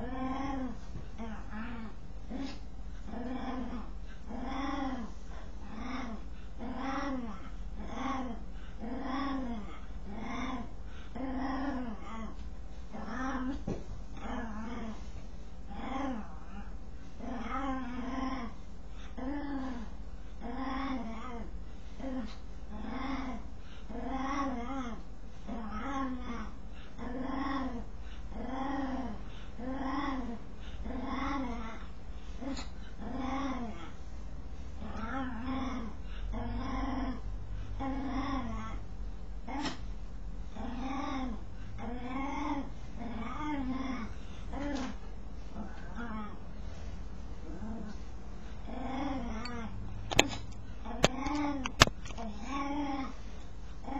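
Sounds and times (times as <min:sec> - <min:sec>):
dog moaning: 0:00.0 - 0:15.1, 0:15.7 - 0:34.1, 0:34.8 - 0:38.9, 0:40.5 - 0:46.5, 0:48.6 - 0:50.2, 0:50.8 - 0:53.2.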